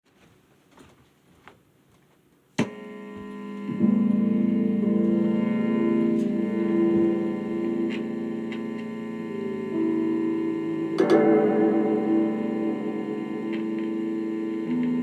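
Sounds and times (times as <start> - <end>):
overdriven electric guitar chords: 2.6 - 15.0.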